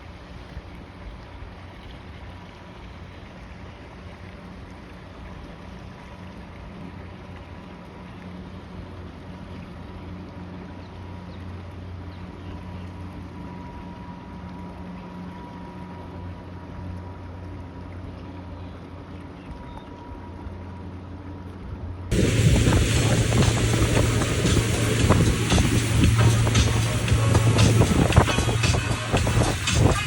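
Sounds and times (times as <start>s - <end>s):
water rushing: 0.0s - 19.3s, 22.1s - 30.0s
boat engine drone: 0.0s - 30.0s
wind: 0.0s - 30.0s
thin whine: 22.1s - 30.0s.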